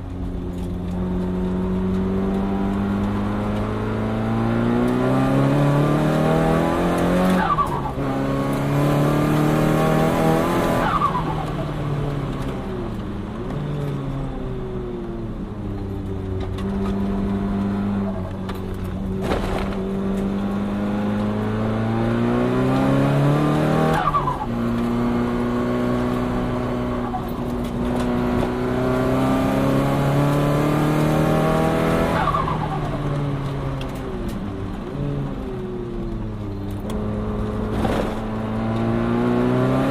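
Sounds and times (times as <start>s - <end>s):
car engine revving through gears: 0.0s - 39.9s.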